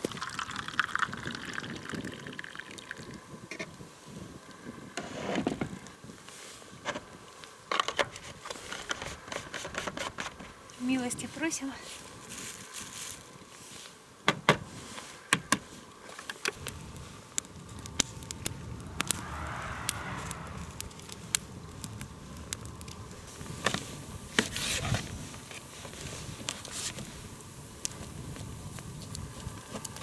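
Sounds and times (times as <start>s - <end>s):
wood campfire crackling: 14.7s - 30.0s.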